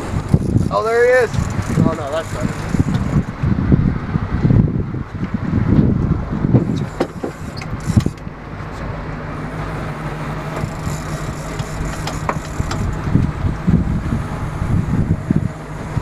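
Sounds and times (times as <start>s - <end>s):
boat engine droning: 0.0s - 4.4s, 5.4s - 16.0s
gusty noise: 0.0s - 16.0s.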